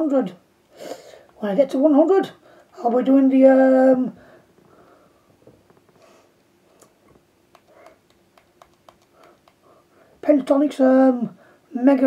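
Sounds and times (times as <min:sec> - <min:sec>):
faint sharp clicks: 0:06.8 - 0:09.6.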